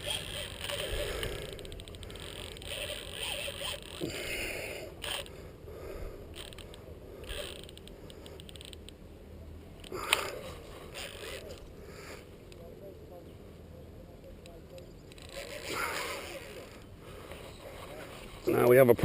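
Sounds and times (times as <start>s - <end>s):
fishing reel drag clicking: 0.0s - 4.3s, 5.0s - 5.4s, 6.3s - 9.0s, 9.8s - 11.6s, 15.1s - 16.8s.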